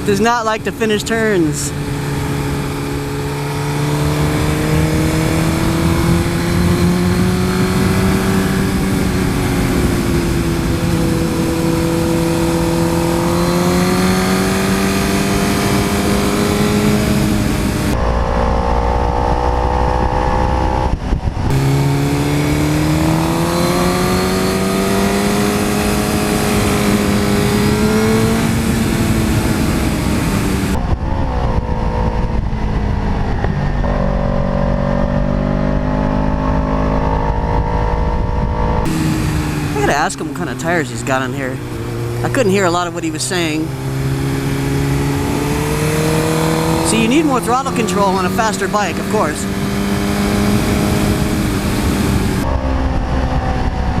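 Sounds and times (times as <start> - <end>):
motorcycle engine revving: 0.0 - 54.0
wind rush: 18.6 - 24.6.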